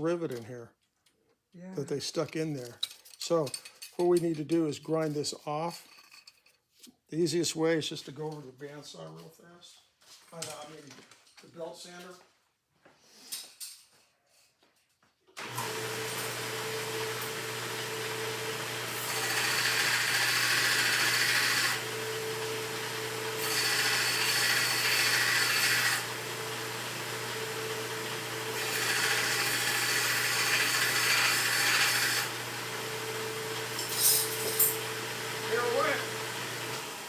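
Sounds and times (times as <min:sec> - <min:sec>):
belt sander running: 0:15.4 - 0:37.0
metal grinding against belt: 0:33.7 - 0:34.9.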